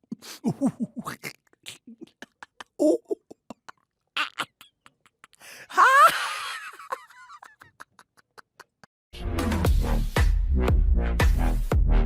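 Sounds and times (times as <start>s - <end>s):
person laughing exaggeratedly: 0.0s - 8.9s.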